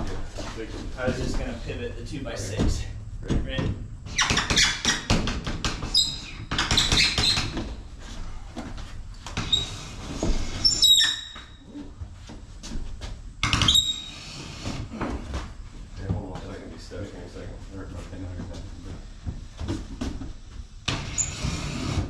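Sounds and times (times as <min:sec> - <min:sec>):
high squeaks: 0:05.9 - 0:07.6, 0:09.4 - 0:11.7, 0:13.6 - 0:14.5, 0:21.0 - 0:21.8.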